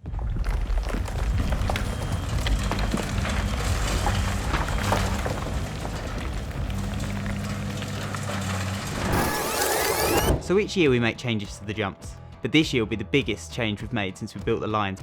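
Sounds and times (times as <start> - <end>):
engine rumbling: 0.7 - 11.8.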